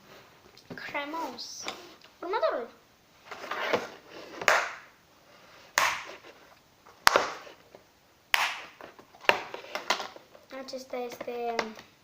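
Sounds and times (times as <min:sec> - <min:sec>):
slime snapping and smacking: 0:05.8 - 0:06.1, 0:08.3 - 0:08.8.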